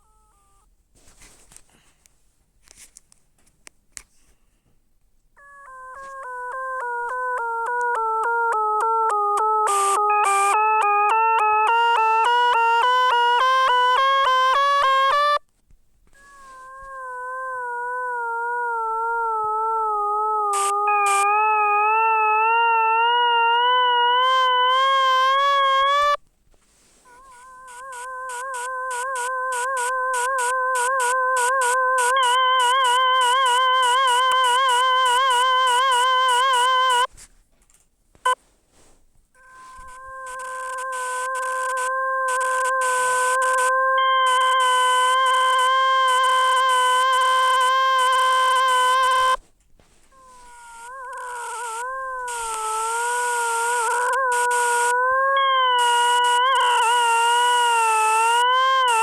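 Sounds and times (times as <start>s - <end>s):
wavering synthesized tone: 28.2s - 37.1s
fast pulsing synthesized tone: 28.5s - 37.1s.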